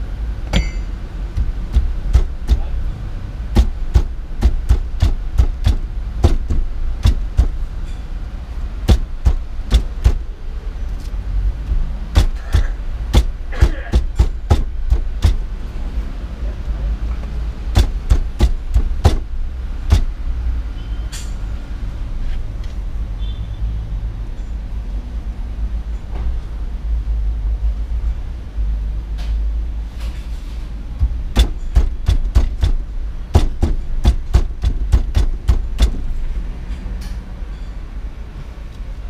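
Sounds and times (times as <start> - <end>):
steady low rumble: 0.0 - 20.8, 26.7 - 36.8
hand tools clicking and knocking: 0.5 - 2.8, 3.5 - 8.1, 8.9 - 10.3, 10.9 - 15.4, 17.7 - 19.3, 31.0 - 37.2.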